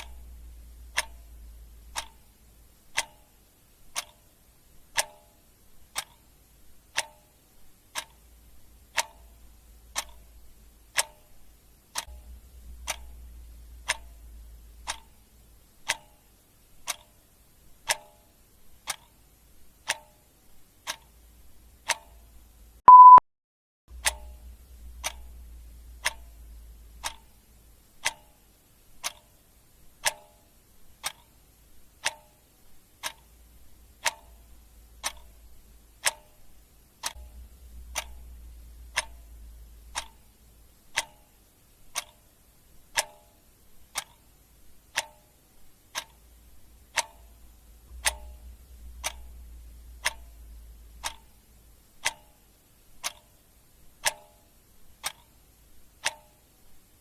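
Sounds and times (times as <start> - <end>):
clock ticking: 0.0 - 23.2, 23.9 - 57.0
short high beep: 22.9 - 23.2.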